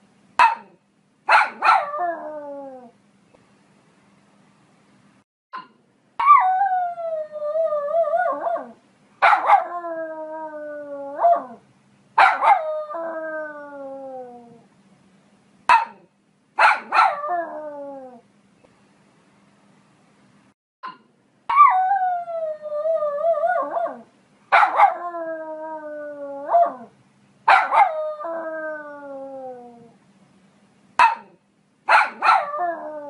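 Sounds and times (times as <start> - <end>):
dog barking: 0.4 - 1.9, 9.2 - 9.7, 12.2 - 12.6, 15.7 - 17.2, 24.5 - 25.0, 27.5 - 28.0, 31.0 - 32.5.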